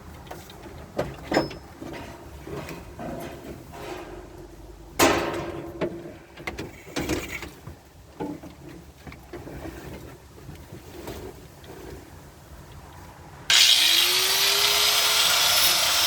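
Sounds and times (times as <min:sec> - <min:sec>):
sheet metal clanks and knocks: 0:01.0 - 0:07.2
loud ringing metal clang: 0:03.1 - 0:05.8.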